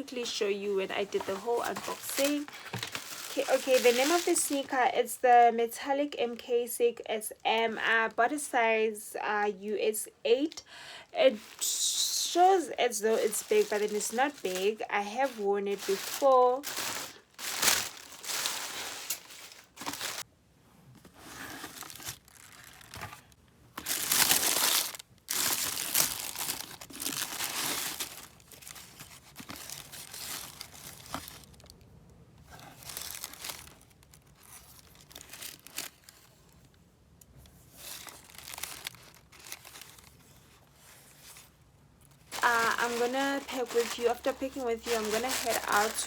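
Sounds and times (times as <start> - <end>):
packaging crinkling and tearing: 1.1 - 4.7, 11.3 - 20.3, 21.6 - 31.8, 32.5 - 36.7, 37.8 - 40.6, 41.2 - 46.0.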